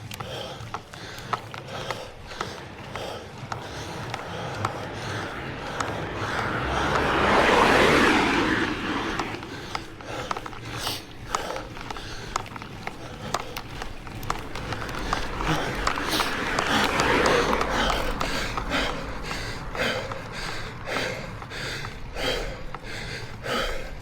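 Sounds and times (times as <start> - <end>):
person breathing hard: 0.0 - 24.0
rushing sound: 2.5 - 10.4.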